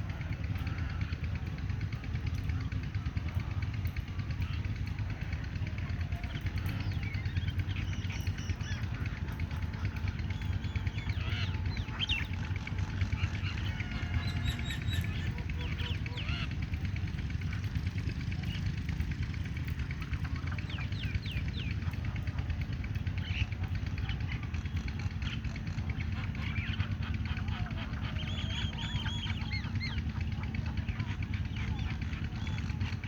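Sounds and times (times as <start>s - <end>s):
flock of birds calling: 0.0s - 33.0s.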